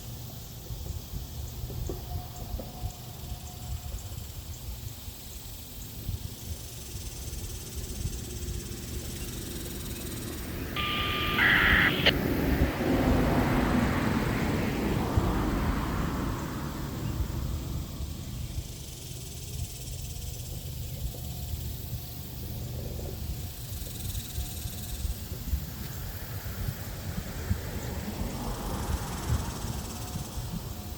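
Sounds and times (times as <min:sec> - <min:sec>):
brief high steady tone: 0:10.8 - 0:12.1
wind rumble on microphone: 0:12.1 - 0:30.9.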